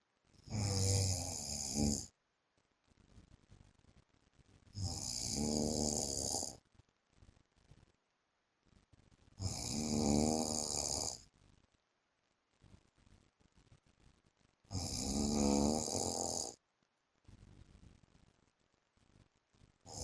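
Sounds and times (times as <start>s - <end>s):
man snoring: 0.4s - 2.1s, 4.8s - 6.6s, 9.4s - 11.2s, 14.7s - 16.6s.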